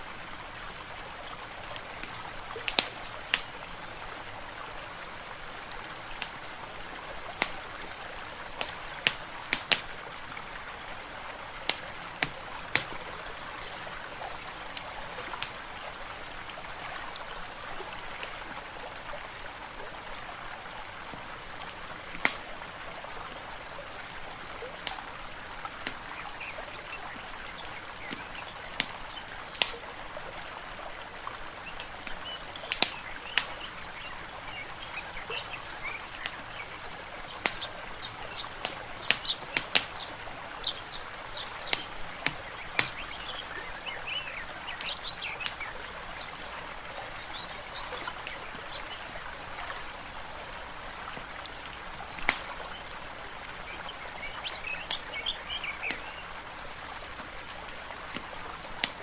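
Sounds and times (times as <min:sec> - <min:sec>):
watery hiss of stream: 0:00.0 - 0:59.0
fireplace crackling pops: 0:07.4 - 0:07.7, 0:08.6 - 0:09.9, 0:11.7 - 0:13.2, 0:21.6 - 0:22.4, 0:37.3 - 0:37.8, 0:38.6 - 0:40.1, 0:41.4 - 0:43.6, 0:51.7 - 0:52.6
bird chirps: 0:31.7 - 0:49.2.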